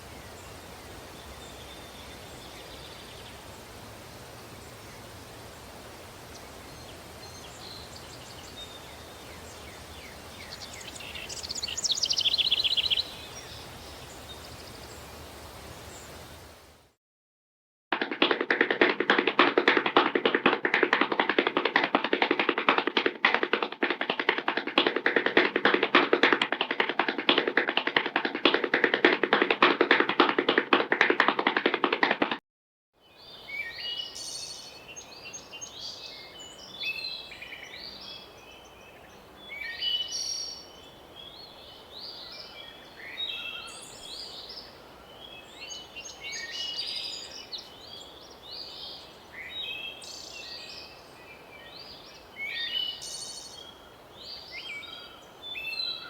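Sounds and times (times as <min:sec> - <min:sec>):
songbirds chirping: 0:00.0 - 0:16.7, 0:33.0 - 0:56.0
faint outdoor ambience: 0:00.0 - 0:16.9, 0:33.0 - 0:56.0
rapid tapping clatter: 0:18.0 - 0:32.4.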